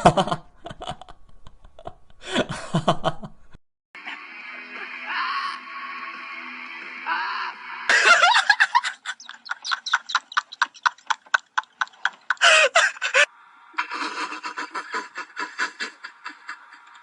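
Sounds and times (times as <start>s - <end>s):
person laughing hard: 0.0s - 3.3s, 7.9s - 17.0s.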